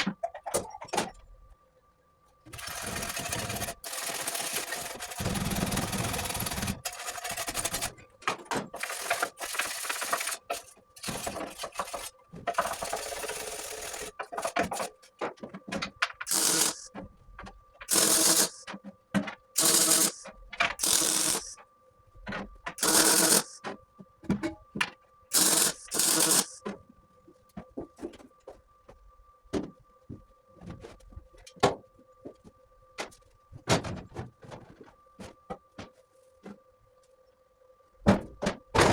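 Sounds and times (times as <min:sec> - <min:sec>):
welder arc crackling and hissing: 0:16.3 - 0:16.9, 0:17.9 - 0:18.7, 0:19.6 - 0:21.6, 0:22.8 - 0:23.6, 0:25.3 - 0:26.6.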